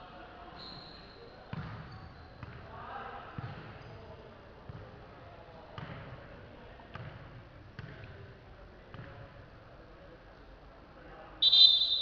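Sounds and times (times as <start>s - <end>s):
low background murmur: 0.0s - 12.0s
basketball bouncing on a court: 1.5s - 2.6s, 3.4s - 3.8s, 4.7s - 5.0s, 5.8s - 6.2s, 6.9s - 8.1s, 8.9s - 9.2s.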